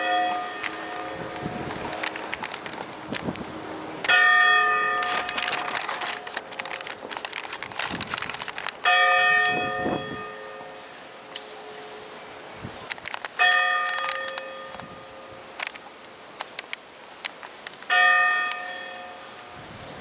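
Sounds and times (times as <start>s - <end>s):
church bell ringing: 0.0s - 2.3s, 3.6s - 6.2s, 8.8s - 12.2s, 13.4s - 15.3s, 17.9s - 19.6s.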